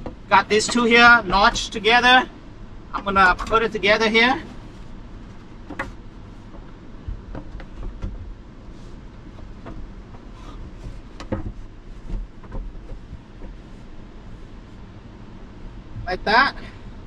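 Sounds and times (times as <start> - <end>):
wooden boards knocking together: 5.6 - 6.0, 9.4 - 13.6.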